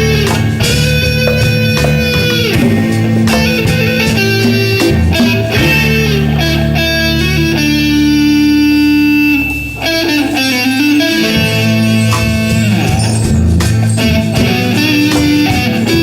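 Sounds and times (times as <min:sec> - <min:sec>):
electric guitar long note: 0:00.0 - 0:16.0
live band playing instrumental music: 0:00.0 - 0:16.0.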